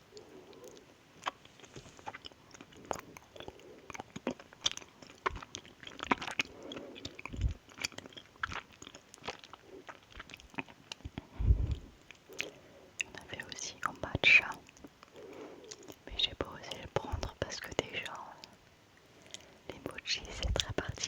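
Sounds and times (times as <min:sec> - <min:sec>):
wet chewing mouth sounds: 0:00.0 - 0:21.0
low thumps: 0:11.4 - 0:11.9.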